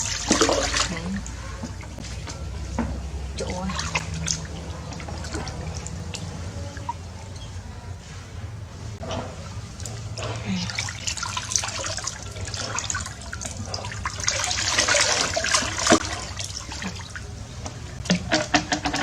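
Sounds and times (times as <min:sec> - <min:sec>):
water splashing in bathtub: 0:00.0 - 0:19.0.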